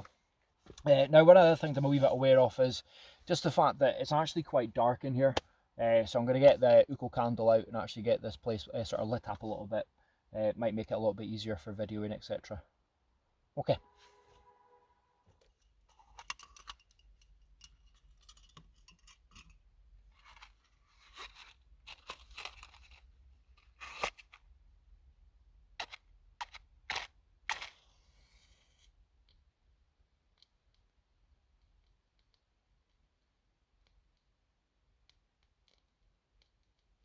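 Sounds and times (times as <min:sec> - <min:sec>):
rustling and scraping: 0:17.6 - 0:24.4.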